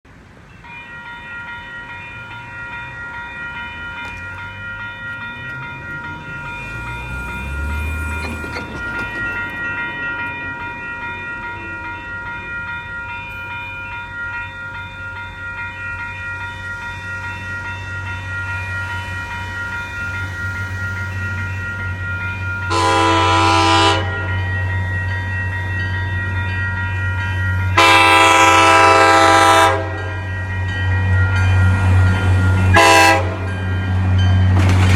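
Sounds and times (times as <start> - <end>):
train passing with low rumble: 0.1 - 34.9
steady high tones: 0.4 - 22.9
train horn blast: 22.7 - 24.4, 27.7 - 30.3, 32.6 - 33.6.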